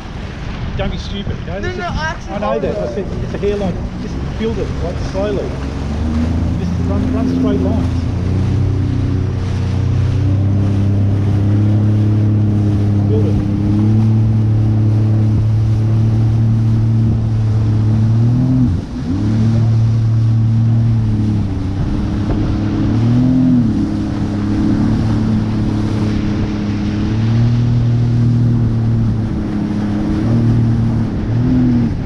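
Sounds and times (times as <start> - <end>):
jet ski engine revving: 1.7 - 32.0.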